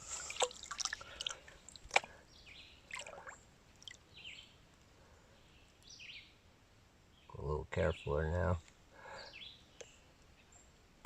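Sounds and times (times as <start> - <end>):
water swishing: 0.0 - 2.1, 2.9 - 4.0.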